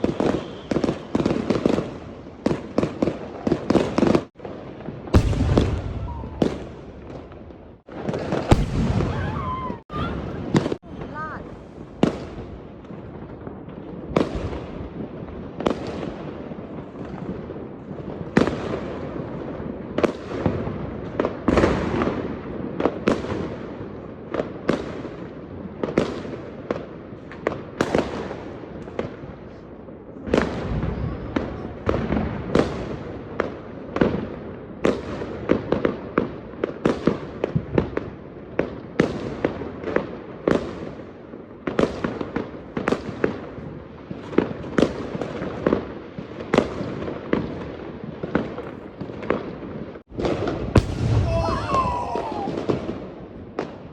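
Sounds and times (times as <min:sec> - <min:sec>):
fireworks crackling: 0:00.0 - 0:23.8, 0:39.0 - 0:53.9
fireworks bangs: 0:00.0 - 0:53.9.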